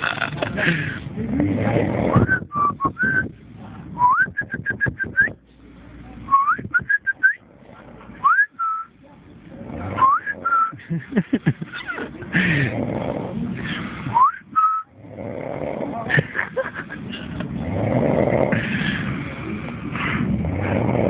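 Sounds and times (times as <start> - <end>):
low rattling noises: 0.0 - 8.2.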